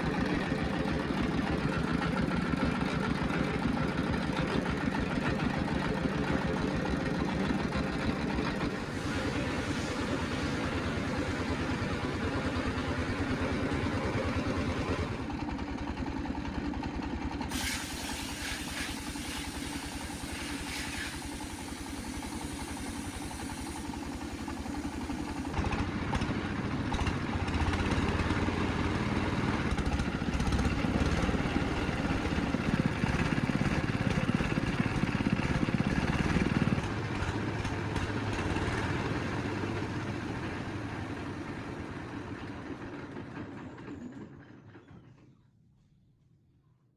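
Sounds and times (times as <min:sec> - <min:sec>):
engine-driven machine pulsing: 0:08.2 - 0:16.0, 0:17.9 - 0:40.5.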